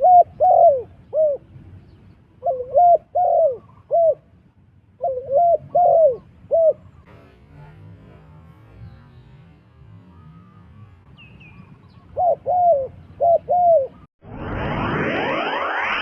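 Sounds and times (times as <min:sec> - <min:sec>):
dove cooing: 0:00.0 - 0:01.5, 0:02.4 - 0:04.2, 0:05.0 - 0:07.0, 0:12.2 - 0:14.1.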